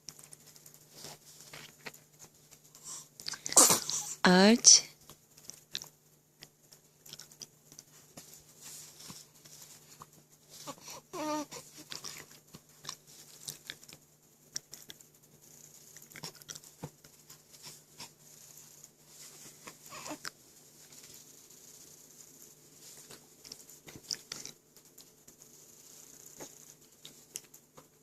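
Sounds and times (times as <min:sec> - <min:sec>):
faint clicks and rustles: 0:00.0 - 0:03.6, 0:04.9 - 0:28.0
baby vocalizing: 0:02.9 - 0:04.8, 0:10.6 - 0:12.1, 0:19.9 - 0:20.3.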